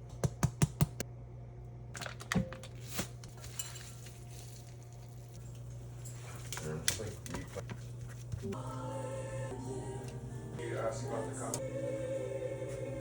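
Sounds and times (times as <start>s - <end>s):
low hum: 8.4s - 13.0s.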